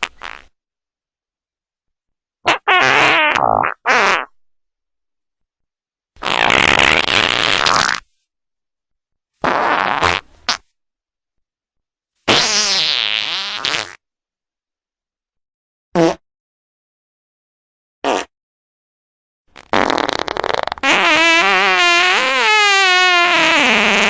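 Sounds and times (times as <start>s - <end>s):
fart sound effects: 0.0s - 0.5s, 2.5s - 4.3s, 6.2s - 8.1s, 9.4s - 10.7s, 12.3s - 14.0s, 16.0s - 16.2s, 18.0s - 18.3s, 19.6s - 24.0s.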